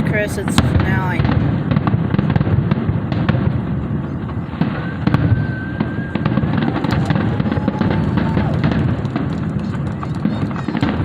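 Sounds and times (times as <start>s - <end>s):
fireworks booming: 0.0s - 11.0s
fireworks crackling: 0.0s - 11.0s
firework whistles: 4.1s - 11.0s.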